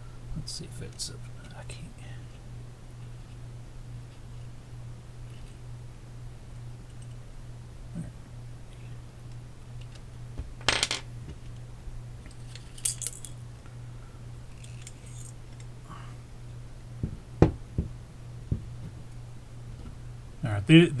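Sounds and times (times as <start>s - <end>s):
steady low hum: 0.0s - 21.0s
small metal parts clicking and clinking: 12.3s - 13.4s, 14.5s - 15.7s
sharp knocks: 17.0s - 19.0s.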